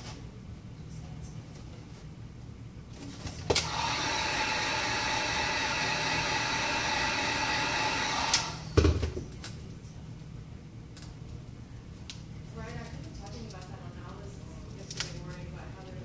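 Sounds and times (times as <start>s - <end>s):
heat gun blowing with a whine: 3.5s - 8.8s.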